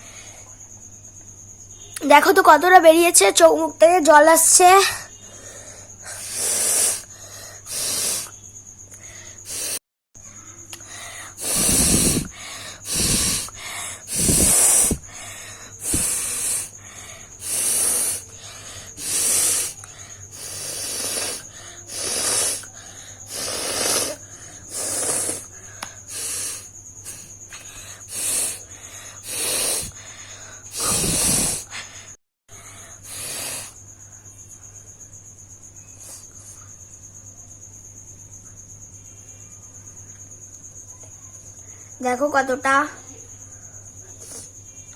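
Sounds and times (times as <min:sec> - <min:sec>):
person blowing her nose: 0:06.0 - 0:08.3, 0:09.5 - 0:09.8, 0:11.2 - 0:15.2, 0:15.8 - 0:16.8, 0:17.4 - 0:18.3, 0:19.0 - 0:25.5, 0:26.1 - 0:30.0, 0:30.7 - 0:31.9, 0:33.0 - 0:33.8.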